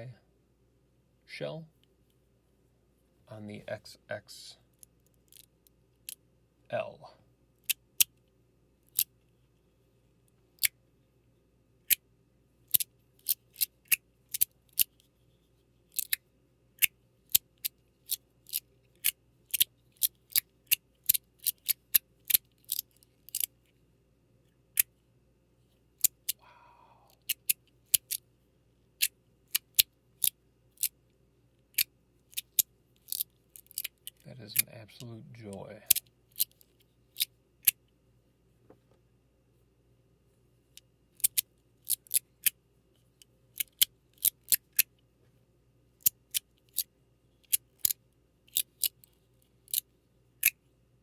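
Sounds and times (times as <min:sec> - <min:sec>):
fidget slider clicking: 0:15.9 - 0:16.2, 0:16.8 - 0:23.5, 0:27.2 - 0:28.2, 0:31.8 - 0:34.7, 0:41.2 - 0:42.5, 0:43.6 - 0:44.8.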